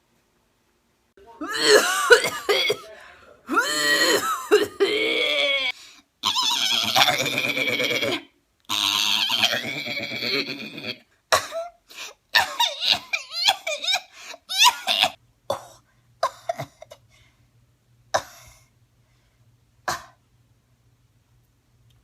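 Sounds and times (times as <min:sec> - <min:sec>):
woman coughing: 0:01.4 - 0:05.7, 0:11.3 - 0:11.8, 0:12.4 - 0:17.0, 0:19.9 - 0:20.2.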